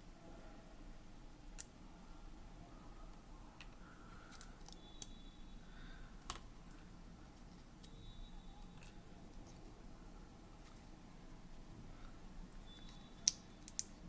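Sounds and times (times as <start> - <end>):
low background noise: 0.0 - 14.0
faint high steady tone: 2.0 - 6.1, 6.7 - 10.4, 11.2 - 13.8.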